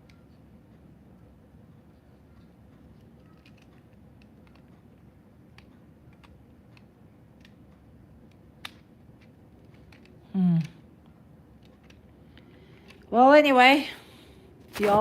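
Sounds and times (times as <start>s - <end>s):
plastic bricks clicking: 2.9s - 10.8s.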